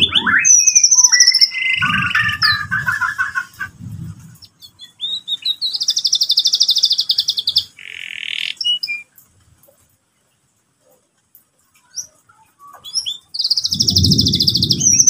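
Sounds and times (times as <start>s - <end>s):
canary singing: 0.0s - 9.2s, 11.9s - 15.0s.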